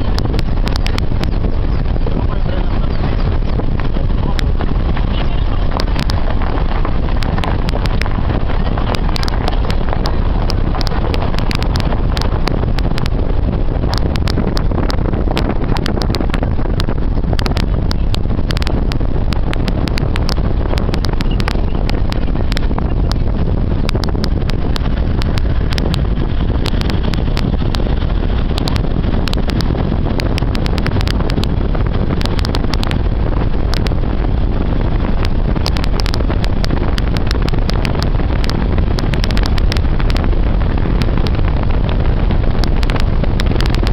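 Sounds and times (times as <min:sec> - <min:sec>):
crackling clicks: 0:00.0 - 0:43.9
vehicle rumbling on road: 0:00.0 - 0:43.9
wind on microphone: 0:00.0 - 0:43.9.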